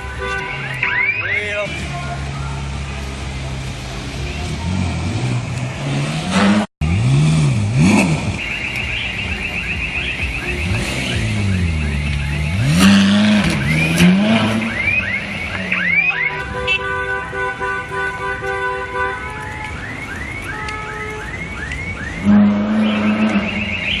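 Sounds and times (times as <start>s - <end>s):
car engine revving: 1.6s - 16.0s, 22.2s - 24.0s.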